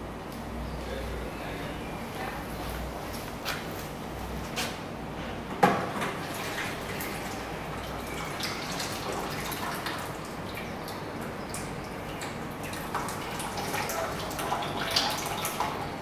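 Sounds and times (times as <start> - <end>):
dishwashing machine running: 5.6 - 16.0.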